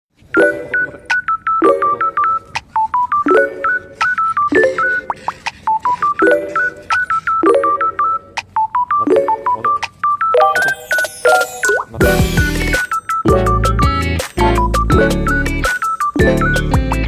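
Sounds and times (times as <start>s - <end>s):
bouncy beeping tune: 0.3s - 17.0s
repeating chord: 10.4s - 13.5s.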